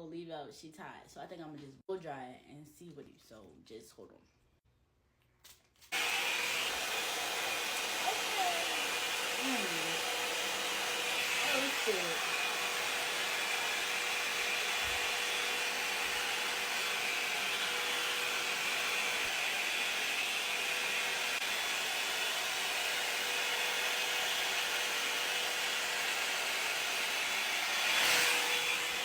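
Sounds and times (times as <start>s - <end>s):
hair dryer blowing: 5.9s - 29.0s.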